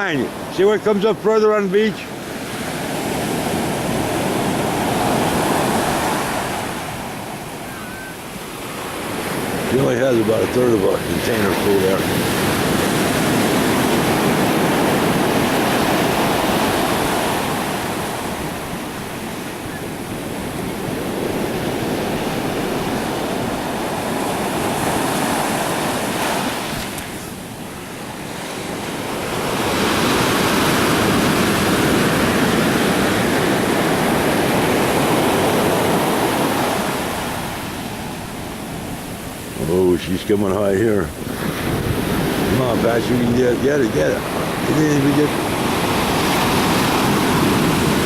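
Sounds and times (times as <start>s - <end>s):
waves breaking on beach: 0.0s - 48.0s
wind on microphone: 41.1s - 48.0s.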